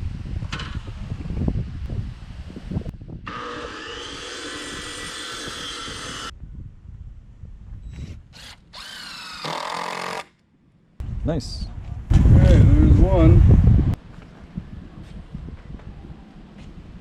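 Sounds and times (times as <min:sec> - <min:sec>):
impact driver driving screws: 0:08.4 - 0:10.3.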